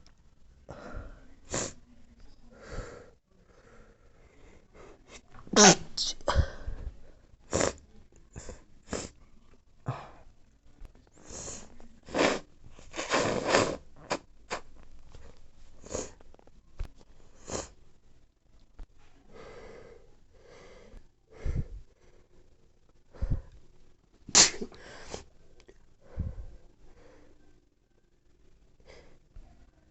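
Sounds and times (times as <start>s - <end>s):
person sneezing: 5.5s - 6.6s, 24.3s - 25.2s.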